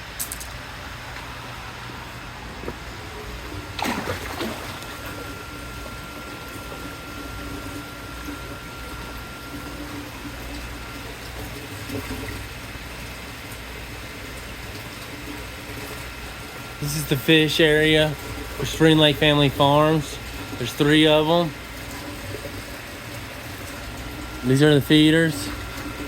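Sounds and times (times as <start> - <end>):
water trickling: 2.5 - 26.0.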